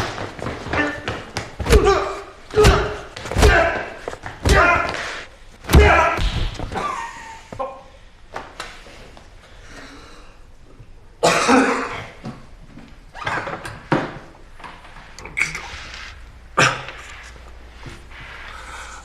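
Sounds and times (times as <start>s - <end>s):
man coughing: 11.2s - 12.2s.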